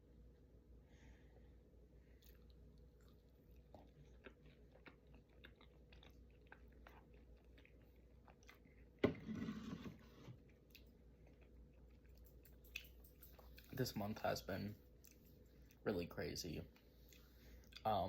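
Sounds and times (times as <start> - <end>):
person chewing food: 2.1 - 9.2, 10.0 - 13.8, 14.9 - 15.8, 16.7 - 18.0.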